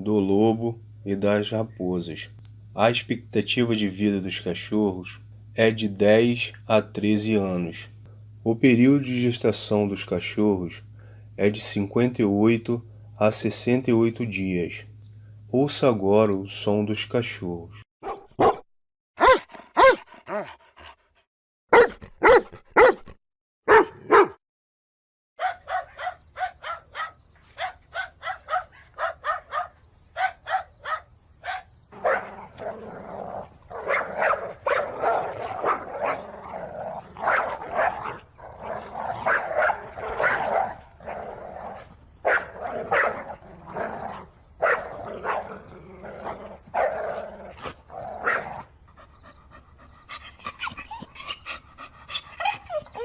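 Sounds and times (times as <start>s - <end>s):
dogs barking: 18.0s - 18.6s, 19.2s - 20.9s, 21.7s - 23.1s, 23.7s - 24.4s, 25.4s - 53.0s
high-pitched yaps: 19.2s - 20.4s
dogs yelping: 19.2s - 20.9s, 21.7s - 23.1s, 23.7s - 24.4s, 25.4s - 53.0s.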